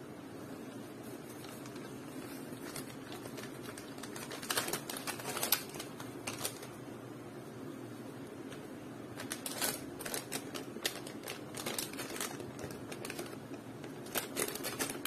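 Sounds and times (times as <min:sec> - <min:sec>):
low background hum: 0:00.0 - 0:15.0
package clicks and crinkles: 0:02.6 - 0:06.7, 0:09.2 - 0:15.0.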